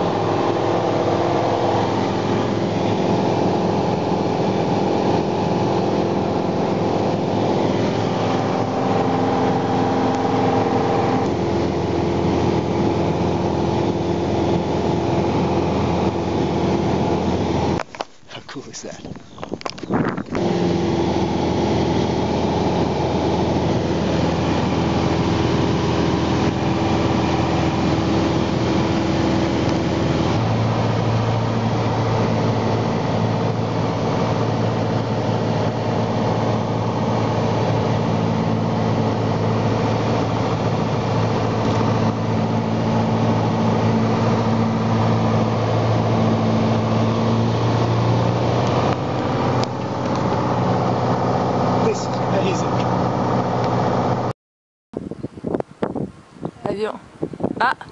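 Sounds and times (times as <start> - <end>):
light aircraft engine running: 0.0 - 54.3.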